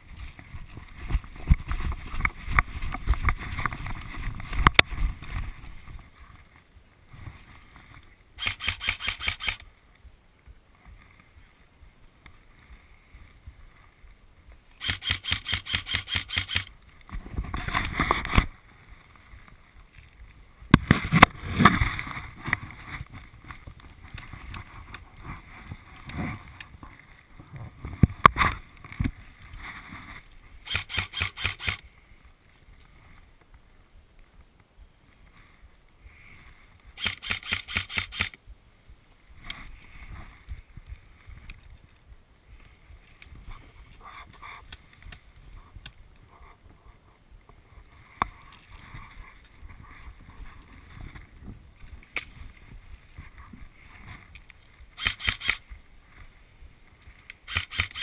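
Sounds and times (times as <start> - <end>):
rustling handling noise: 0.0 - 9.0
airsoft gun automatic bursts: 8.4 - 9.6, 14.8 - 16.7, 30.6 - 31.8, 37.0 - 38.4, 55.0 - 55.6, 57.5 - 58.0.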